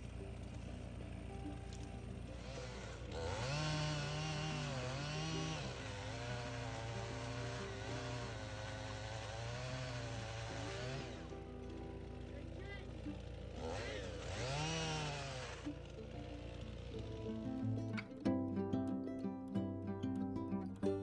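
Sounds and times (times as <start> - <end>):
small engine revving: 0.0 - 18.1.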